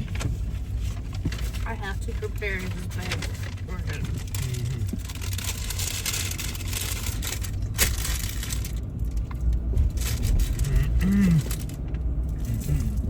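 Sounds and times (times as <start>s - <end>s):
road and engine noise in car: 0.0s - 13.0s
food bag crinkling and rustling: 0.8s - 10.8s.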